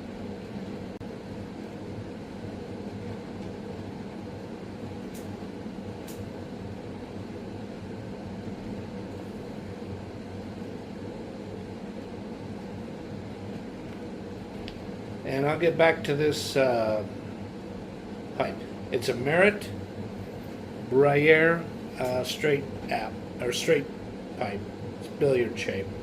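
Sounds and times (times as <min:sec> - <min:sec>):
low mechanical hum of machinery: 0:00.0 - 0:26.0.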